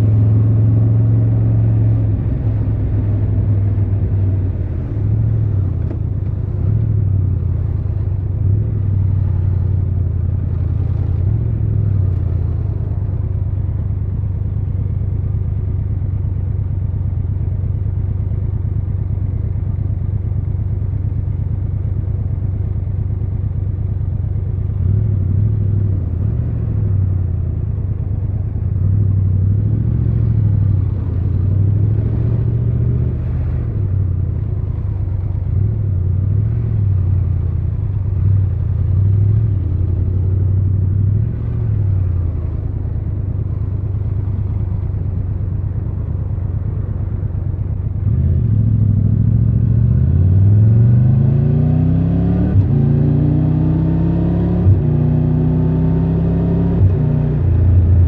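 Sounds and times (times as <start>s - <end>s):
motorcycle engine accelerating: 24.8s - 58.0s.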